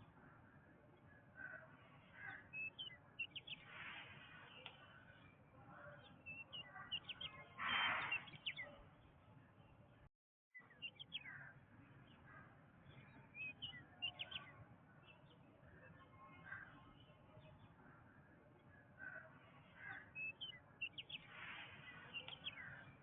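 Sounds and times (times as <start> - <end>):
birds chirping: 0.0 - 9.9, 10.6 - 23.0
loud bird call: 7.0 - 8.6.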